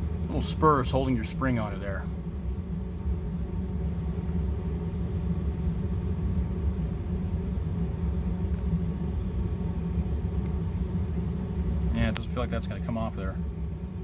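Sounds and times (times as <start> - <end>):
faint hum: 0.0 - 14.0
low background rumble: 0.0 - 14.0
faint light clicks: 8.5 - 8.7, 10.4 - 10.6.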